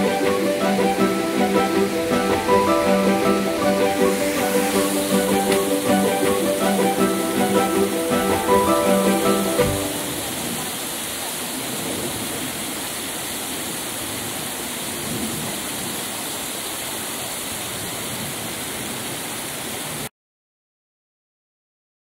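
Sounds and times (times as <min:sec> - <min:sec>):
stream water flowing: 0:00.0 - 0:15.0.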